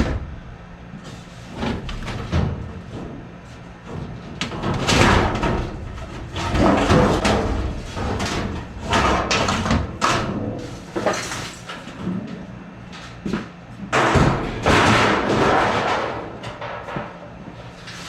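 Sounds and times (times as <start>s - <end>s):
metal clattering and scraping: 3.9s - 9.7s.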